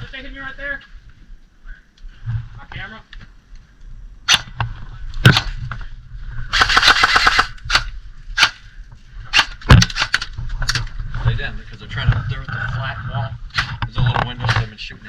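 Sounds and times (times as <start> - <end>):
airsoft gun full-auto burst: 6.5 - 8.6
airsoft gun single shots: 6.6 - 8.6.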